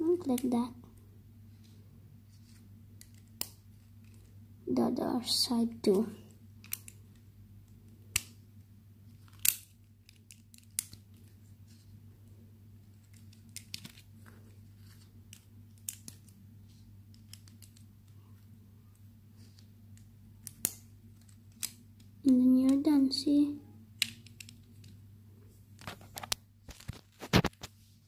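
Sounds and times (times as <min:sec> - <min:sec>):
steady low hum: 0:00.0 - 0:28.0
plastic bricks clicking and snapping: 0:06.6 - 0:07.0, 0:09.2 - 0:11.1, 0:15.3 - 0:16.3, 0:24.0 - 0:25.0.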